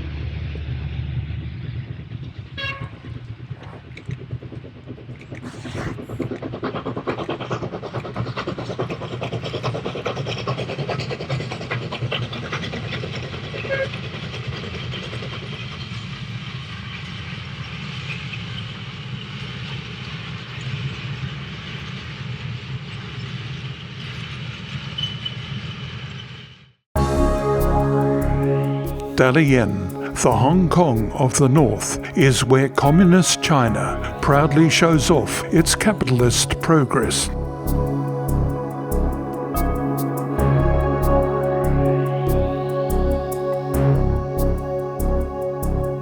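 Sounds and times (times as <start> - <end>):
train rumbling on rails: 0.0 - 26.0.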